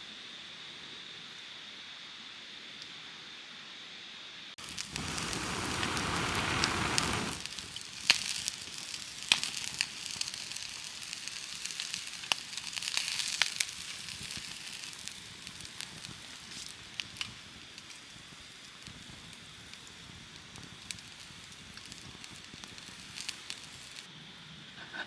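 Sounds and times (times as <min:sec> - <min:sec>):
dense rushing noise: 0:04.6 - 0:08.8
sharp pops: 0:04.6 - 0:24.1
wood fire crackling: 0:04.6 - 0:24.1.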